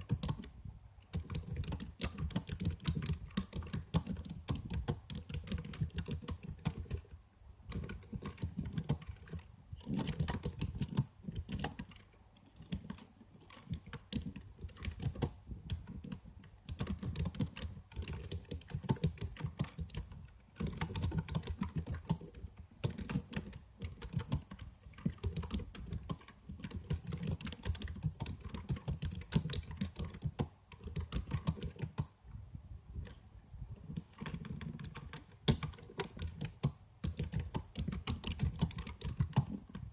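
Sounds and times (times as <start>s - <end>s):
computer keyboard typing: 0.0s - 0.5s, 1.1s - 32.2s, 33.8s - 39.9s.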